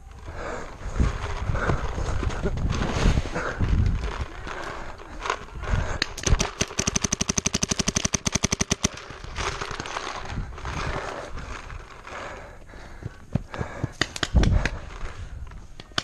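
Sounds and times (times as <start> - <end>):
paintball marker rapid firing: 6.0 - 10.0, 13.0 - 14.9.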